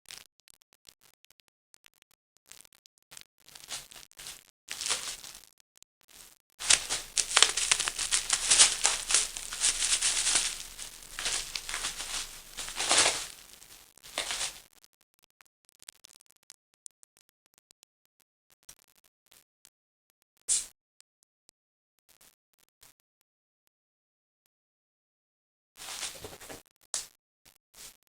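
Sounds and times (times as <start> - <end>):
paper crinkling over bubble wrap: 3.6 - 5.4, 6.6 - 14.6, 25.8 - 26.4.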